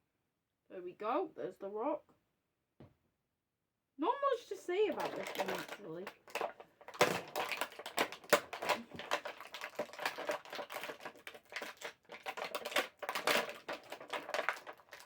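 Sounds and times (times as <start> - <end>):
plastic clicks and rustling: 4.9 - 15.0.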